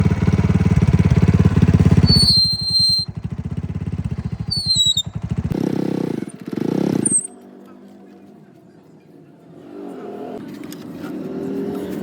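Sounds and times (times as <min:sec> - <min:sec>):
high squealing tones: 0:02.0 - 0:03.2, 0:04.1 - 0:05.2, 0:07.0 - 0:07.4.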